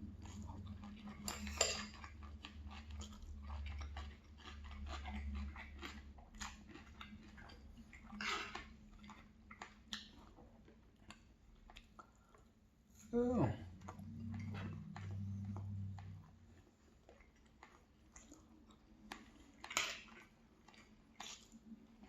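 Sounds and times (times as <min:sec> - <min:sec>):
chewing: 0:00.0 - 0:12.6, 0:13.7 - 0:22.0
cutlery scraping a plate: 0:01.2 - 0:02.0.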